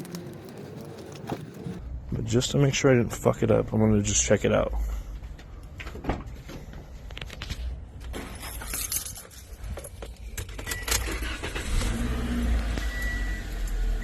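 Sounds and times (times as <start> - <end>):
keys jangling: 8.3 - 10.0.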